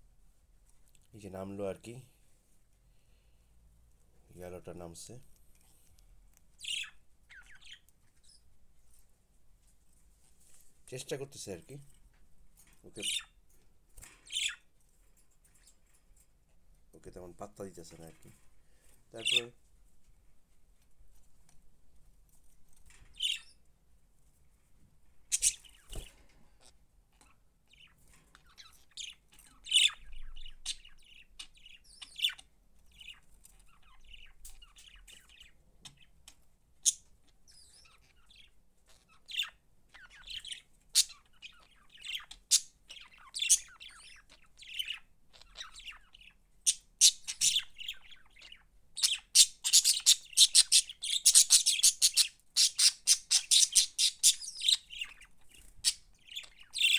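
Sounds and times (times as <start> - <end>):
budgerigars chirping: 6.6 - 8.5, 12.9 - 13.4, 14.2 - 14.7, 19.2 - 19.6, 23.0 - 23.6, 25.3 - 26.8, 27.7 - 36.2, 36.8 - 56.9.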